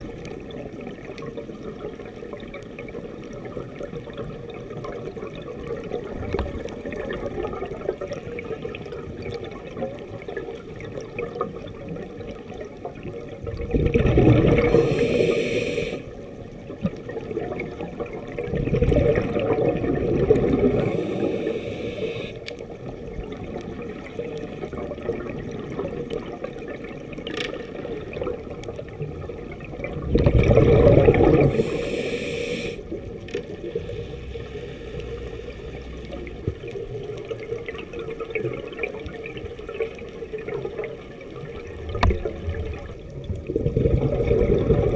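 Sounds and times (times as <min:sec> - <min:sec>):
exhaled bubbles gushing: 0:00.0 - 0:32.1, 0:32.7 - 0:44.9
diver inhaling through regulator: 0:14.3 - 0:16.2, 0:20.5 - 0:22.5, 0:30.8 - 0:33.0, 0:33.7 - 0:36.0
faint clicks: 0:21.2 - 0:28.9, 0:33.0 - 0:40.9, 0:41.6 - 0:42.8.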